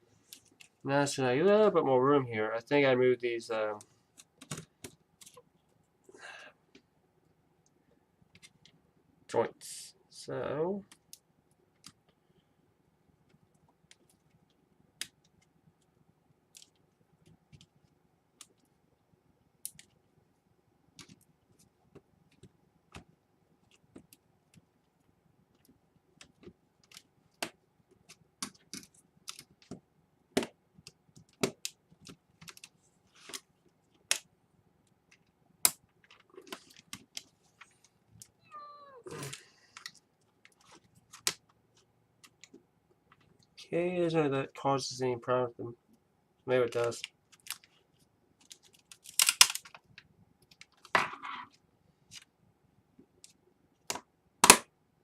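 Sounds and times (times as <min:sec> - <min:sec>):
laptop parts clicking and tapping: 0:04.2 - 0:05.4, 0:21.0 - 0:21.3, 0:25.5 - 0:34.3.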